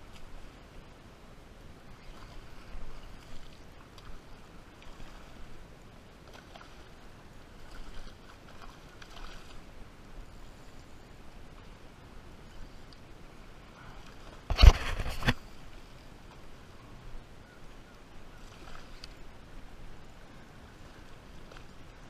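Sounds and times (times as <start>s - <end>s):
water splashing and lapping: 1.9s - 10.9s, 12.8s - 16.5s, 18.3s - 22.0s.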